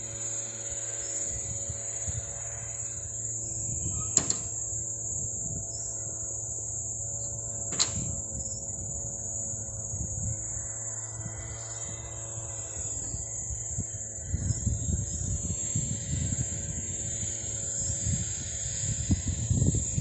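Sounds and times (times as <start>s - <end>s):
insect chirring: 0.0s - 20.0s
low even hum: 0.0s - 20.0s
sharp knocks: 4.2s - 4.5s.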